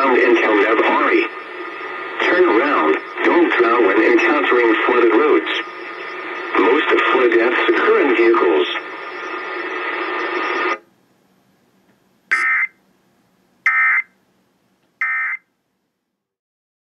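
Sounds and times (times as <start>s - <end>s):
radio hiss: 0.0s - 10.8s, 12.3s - 12.7s
buzzy data bursts: 12.3s - 12.7s.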